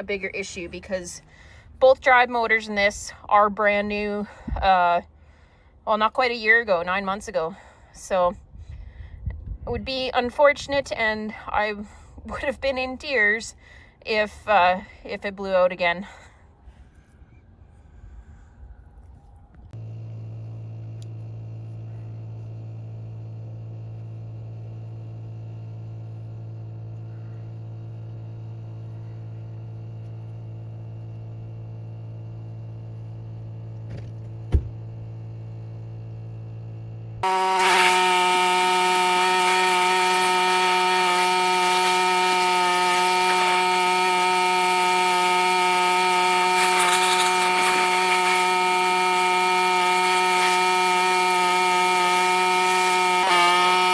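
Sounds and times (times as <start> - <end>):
machine drone with whining tones: 16.9 - 53.9
low engine hum: 17.9 - 53.9.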